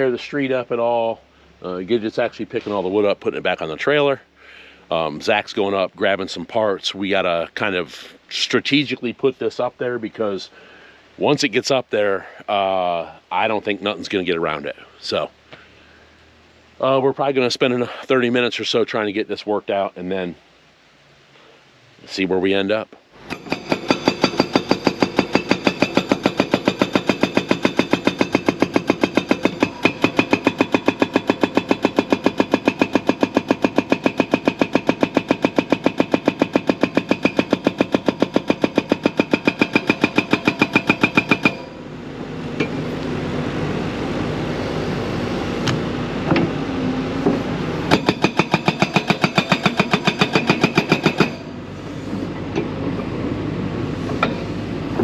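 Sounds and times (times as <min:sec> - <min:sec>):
excavator clanking: 0:23.2 - 0:41.9, 0:42.6 - 0:43.0, 0:47.3 - 0:53.3, 0:53.9 - 0:55.0
excavator engine running: 0:23.2 - 0:55.0.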